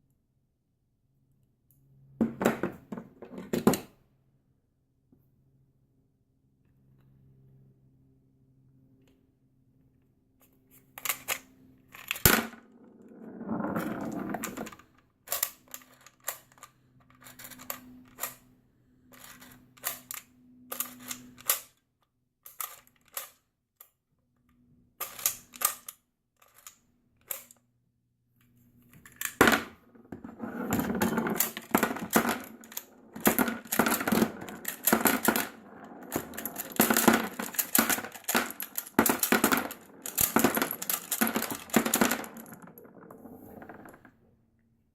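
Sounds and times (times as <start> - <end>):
cartridges rattling: 30.8 - 42.6
metal cartridges clicking: 31.0 - 42.6.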